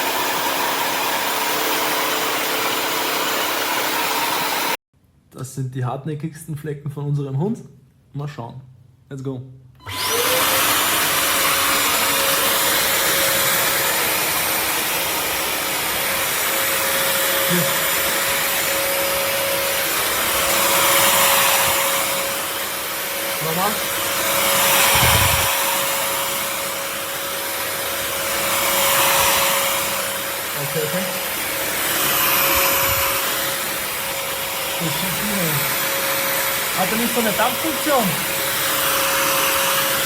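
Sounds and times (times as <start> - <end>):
floor cleaner motor whine: 0.0 - 4.8, 9.8 - 40.0
suction and brush roll rush: 9.9 - 40.0.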